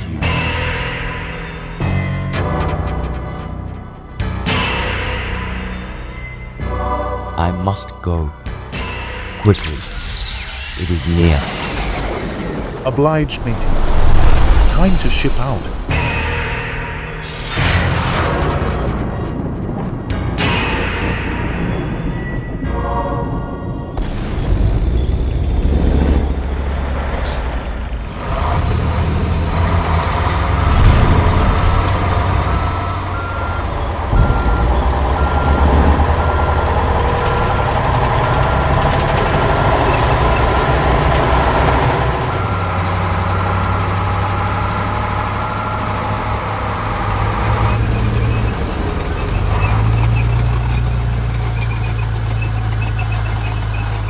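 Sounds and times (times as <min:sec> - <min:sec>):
reversing beeper: 0:09.4 - 0:16.7, 0:17.4 - 0:18.7, 0:30.1 - 0:51.7
air brakes hissing: 0:17.5 - 0:18.3
truck diesel engine running: 0:24.0 - 0:54.0.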